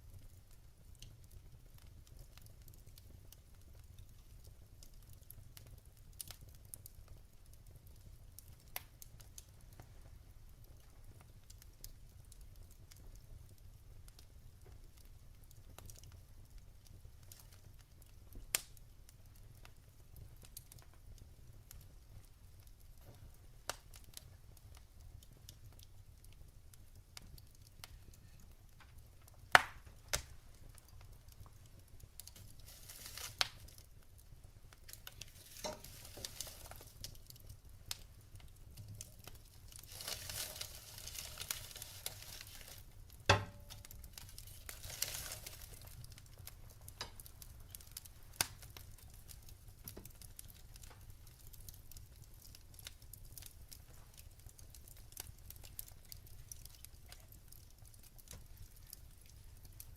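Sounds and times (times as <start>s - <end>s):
wood fire crackling and popping: 0.0s - 59.9s
burning logs hissing: 26.8s - 59.9s.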